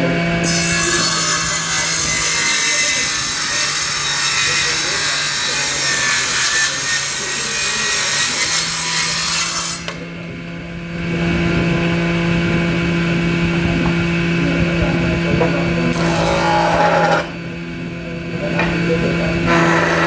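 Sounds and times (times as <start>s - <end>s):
power tool motor humming: 0.0s - 10.0s, 15.8s - 17.4s, 19.4s - 20.0s
wood rasping under cutting: 0.4s - 10.0s, 15.9s - 17.4s, 19.5s - 20.0s.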